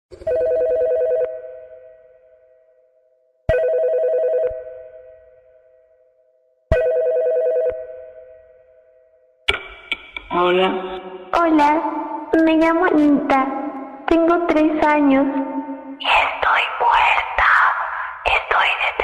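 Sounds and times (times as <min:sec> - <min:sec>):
telephone bell ringing: 0:00.2 - 0:01.9, 0:03.5 - 0:04.9, 0:06.8 - 0:08.1.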